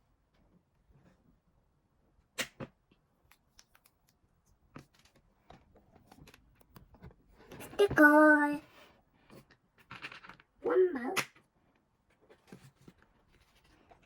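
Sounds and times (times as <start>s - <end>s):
clicks of toy pieces handled: 9.3s - 11.5s.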